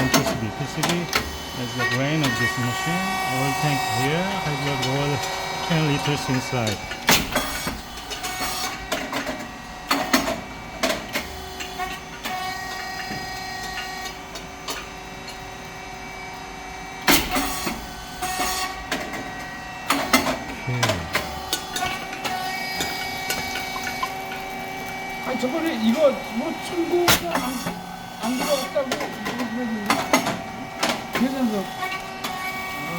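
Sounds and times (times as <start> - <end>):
machine motor humming: 0.0 - 13.6, 20.0 - 31.8.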